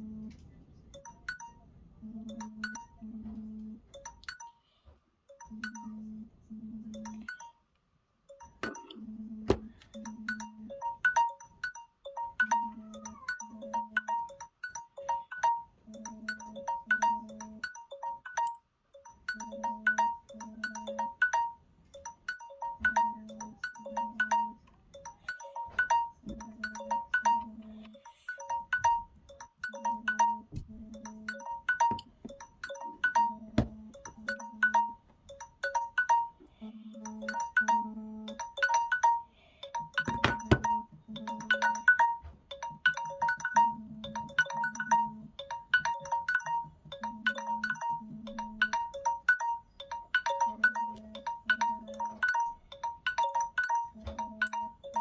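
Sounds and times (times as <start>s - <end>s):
electronic timer alarm melody: 1.0s - 7.6s, 8.3s - 55.0s
knocks: 8.6s - 9.9s, 40.1s - 40.8s.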